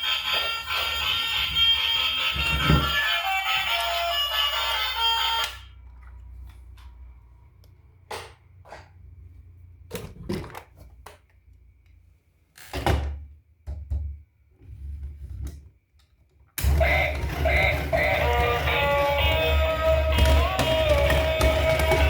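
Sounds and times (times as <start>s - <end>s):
toys and packaging handled: 16.8s - 22.0s.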